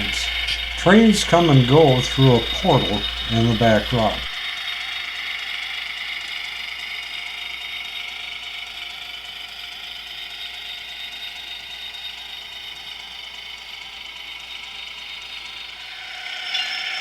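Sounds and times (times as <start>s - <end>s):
train wheel noise: 0.0s - 4.4s
model train motor whirring: 0.0s - 17.0s.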